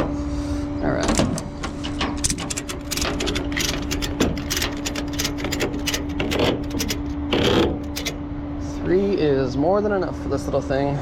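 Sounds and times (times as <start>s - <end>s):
steady low hum: 0.0s - 11.0s
ratchet strap clicking: 2.2s - 8.2s.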